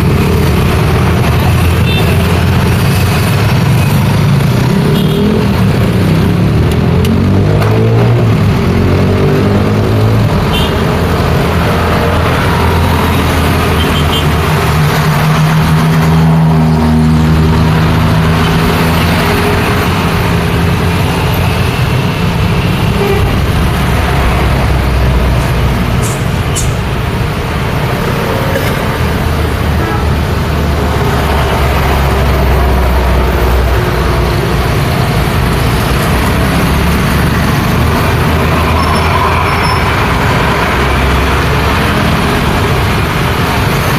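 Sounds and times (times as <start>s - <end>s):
busy road traffic: 0.0s - 43.9s
diesel engines droning: 0.0s - 43.9s
vehicle horn toot: 10.5s - 10.8s.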